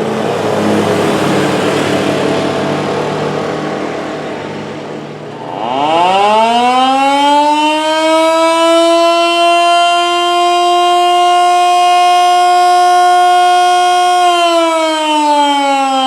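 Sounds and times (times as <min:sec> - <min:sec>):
rushing noise: 0:00.0 - 0:06.2
mechanical siren wailing: 0:00.0 - 0:16.0.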